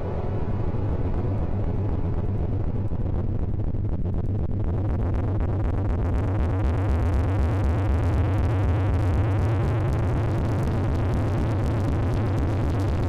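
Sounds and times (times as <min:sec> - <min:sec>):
low bass drone: 0:00.0 - 0:13.0.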